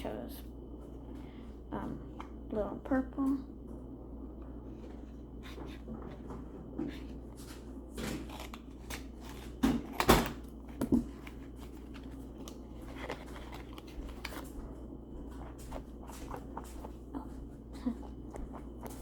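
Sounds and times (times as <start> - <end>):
fidget toy rustles and clicks: 6.9 - 17.2.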